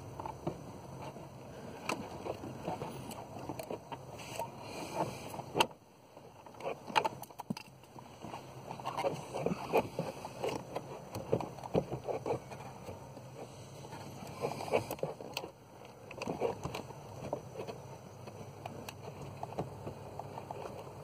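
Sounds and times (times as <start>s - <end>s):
blower motor knocking and clicking: 6.5s - 21.0s.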